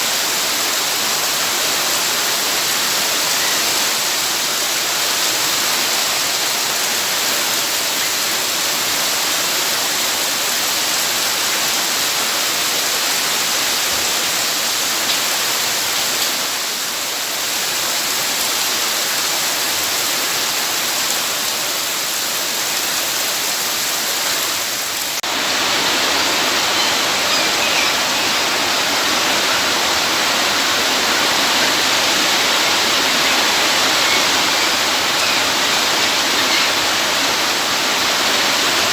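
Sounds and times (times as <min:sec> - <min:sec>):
rushing water: 0:00.0 - 0:38.9.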